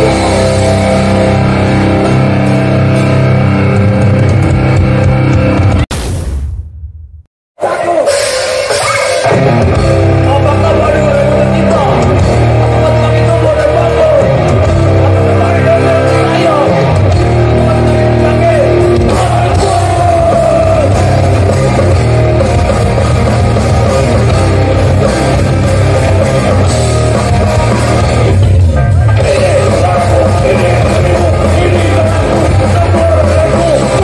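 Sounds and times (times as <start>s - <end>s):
bass: 0.0s - 5.9s, 7.9s - 34.0s
distorted electric guitars: 0.0s - 5.9s, 7.6s - 34.0s
drums: 0.0s - 34.0s
shouted vocals: 10.8s - 22.2s, 29.2s - 34.0s.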